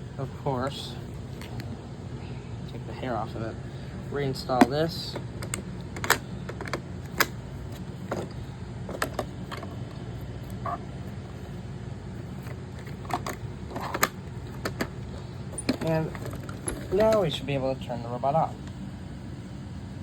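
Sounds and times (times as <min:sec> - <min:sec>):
steady low hum: 0:00.0 - 0:20.0
plastic parts clicking and knocking: 0:04.6 - 0:10.0, 0:12.4 - 0:17.2.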